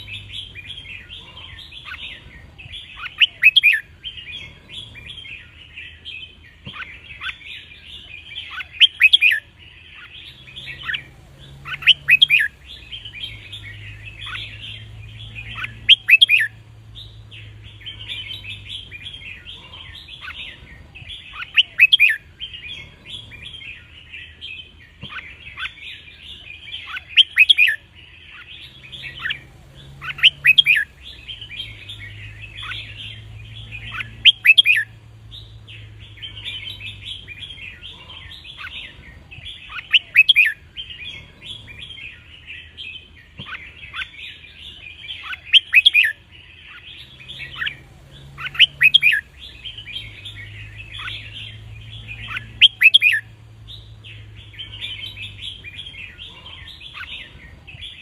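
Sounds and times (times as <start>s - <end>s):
bird whistled song phrases: 0.0s - 5.5s, 6.7s - 16.6s, 20.2s - 22.2s, 26.8s - 34.9s, 35.8s - 41.7s, 43.4s - 53.3s
soft bird chirping: 0.0s - 58.0s.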